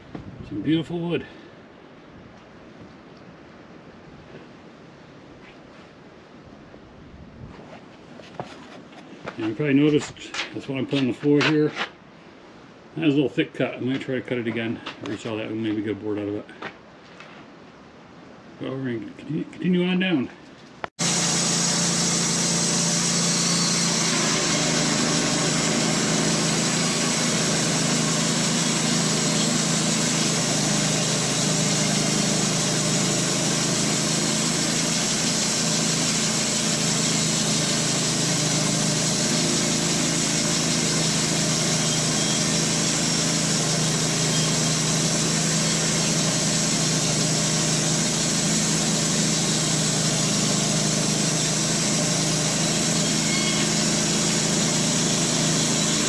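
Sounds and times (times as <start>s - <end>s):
band blade sawing a log: 21.0s - 56.0s
band sawmill running: 21.0s - 56.0s.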